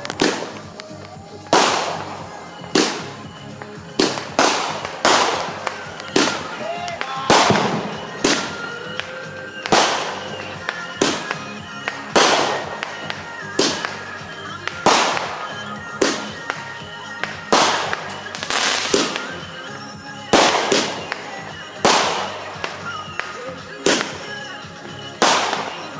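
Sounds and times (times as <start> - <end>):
fireworks bangs: 0.0 - 25.9
fireworks crackling: 0.0 - 25.9.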